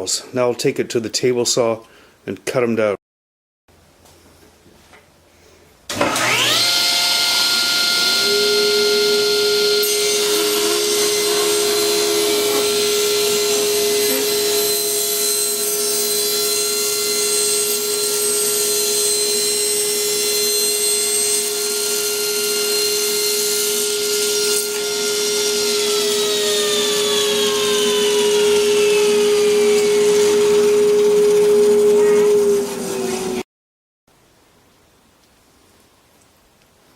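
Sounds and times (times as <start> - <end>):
table saw cutting wood: 5.9 - 33.5.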